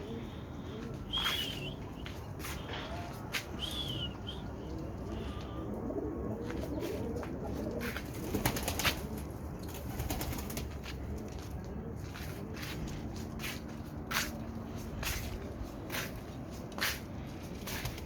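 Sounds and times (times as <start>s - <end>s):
pigeons cooing: 0.0s - 12.8s.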